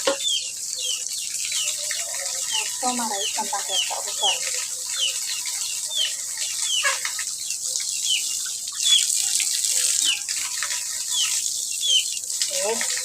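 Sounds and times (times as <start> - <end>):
chicks peeping: 0.2 - 7.1.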